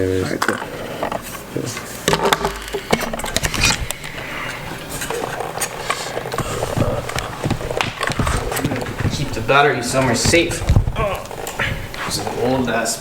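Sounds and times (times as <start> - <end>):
tools and parts clicking and tapping: 2.0 - 9.0.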